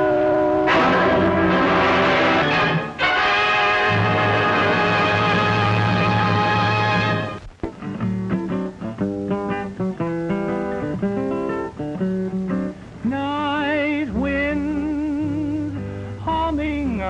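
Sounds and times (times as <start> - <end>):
long held wavering note: 0.0 - 2.4
acoustic guitar picking: 0.0 - 17.0.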